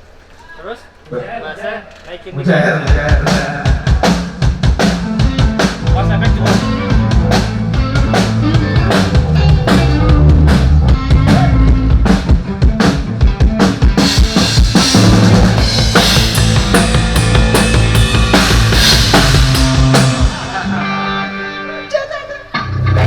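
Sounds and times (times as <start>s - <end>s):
low bass notes: 2.8s - 21.6s, 22.6s - 23.0s
rock band playing loudly: 2.8s - 23.0s
bass drum and snare hits: 2.9s - 20.6s
cymbals: 14.0s - 21.1s.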